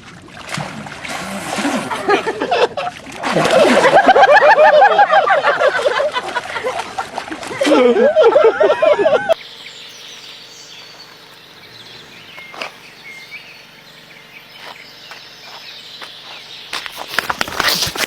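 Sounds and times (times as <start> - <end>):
outdoor background noise: 0.0 - 18.0
animal chirps: 9.4 - 16.9.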